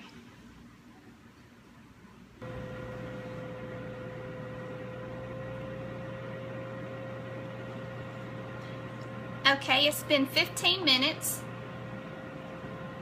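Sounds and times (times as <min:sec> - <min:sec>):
faint steady whine: 0:00.4 - 0:13.0
air fryer fan running: 0:02.4 - 0:13.0.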